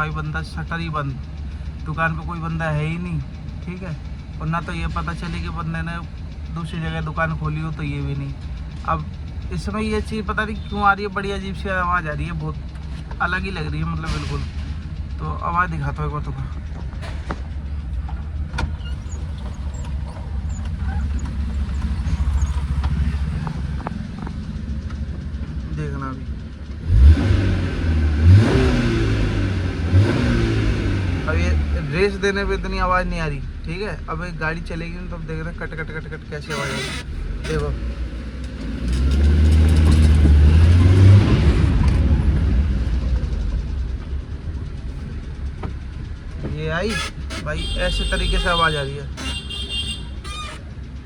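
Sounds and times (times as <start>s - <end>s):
faint rapid ticking rattle: 0.0s - 26.9s
car engine running: 0.0s - 51.0s.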